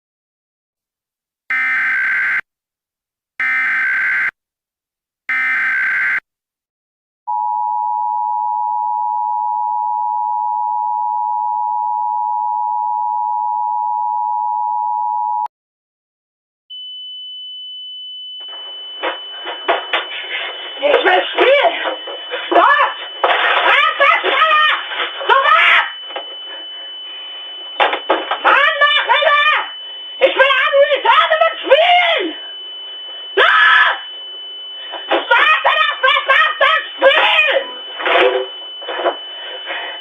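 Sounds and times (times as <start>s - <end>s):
data tone bursts: 18.4s - 40.0s.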